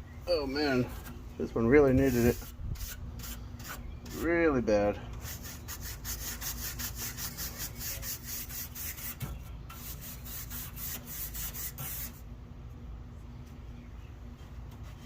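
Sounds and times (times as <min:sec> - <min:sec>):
brush scrubbing metal fins: 0:01.8 - 0:04.4.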